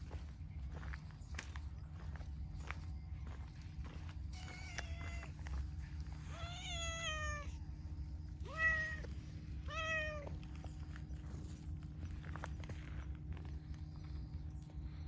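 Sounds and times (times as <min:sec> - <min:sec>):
cat meowing: 0:04.4 - 0:05.4, 0:06.2 - 0:07.6, 0:08.4 - 0:10.4.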